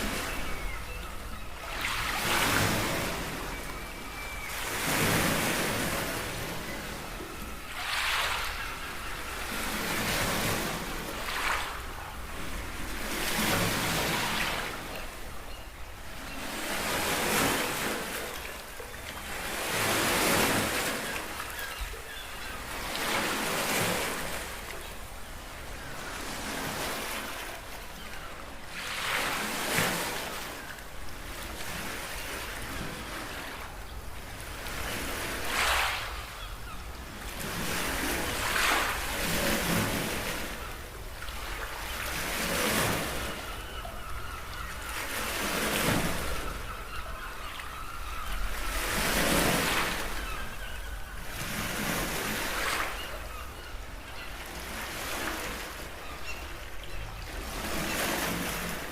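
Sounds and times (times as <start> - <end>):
sea waves washing: 1.5 - 15.0, 31.2 - 43.7.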